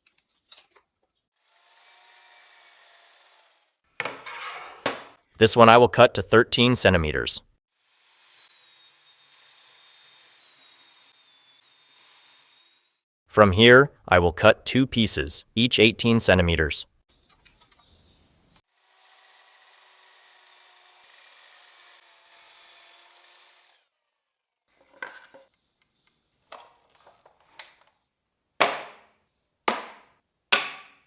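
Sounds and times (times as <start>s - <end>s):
saw cutting wood: 1.4s - 4.6s, 7.7s - 13.0s, 18.6s - 24.0s
wood knocking on wood: 28.6s - 29.1s, 29.7s - 31.0s.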